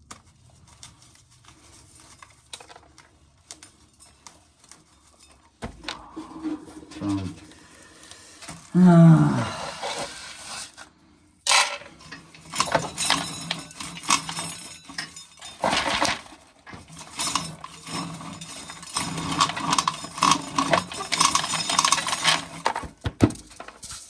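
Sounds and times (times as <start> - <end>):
corn kernels rattling into container: 11.5 - 24.0.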